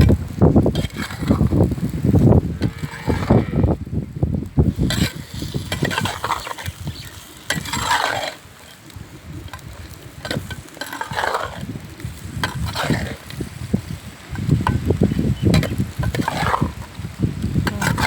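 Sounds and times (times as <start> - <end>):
utensil scraping a pan: 0.7 - 3.7, 4.7 - 13.7, 15.5 - 17.0, 17.6 - 18.0.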